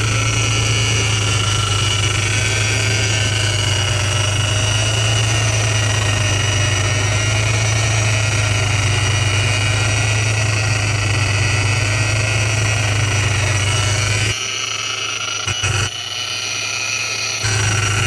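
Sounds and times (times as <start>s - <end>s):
engine low hum: 0.0s - 14.4s
supercharger high-pitched whine: 0.0s - 18.0s.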